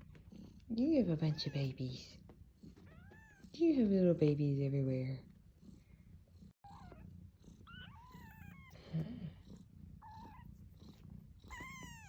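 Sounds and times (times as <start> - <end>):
cat purring: 0.0 - 12.0
kittens mewing: 6.6 - 12.0.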